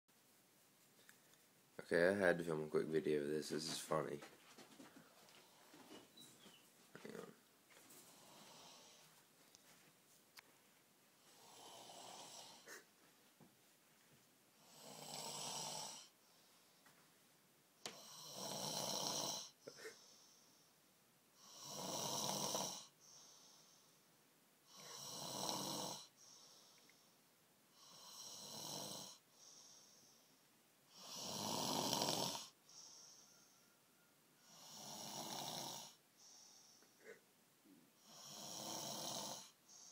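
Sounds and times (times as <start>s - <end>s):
man snoring loudly: 8.1s - 9.0s, 11.3s - 12.8s, 14.6s - 16.1s, 17.9s - 19.6s, 21.4s - 22.9s, 24.7s - 26.1s, 27.8s - 29.2s, 30.9s - 32.6s, 34.4s - 36.0s, 38.0s - 39.6s
soft breath out: 19.6s - 20.8s, 23.0s - 24.1s, 26.1s - 27.2s, 29.3s - 30.4s, 32.6s - 34.1s, 36.2s - 37.3s.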